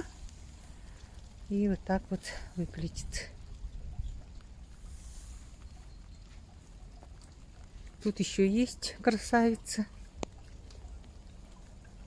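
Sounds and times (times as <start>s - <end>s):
soft hiss: 0.0s - 6.5s
faint rain ticks: 0.0s - 12.0s.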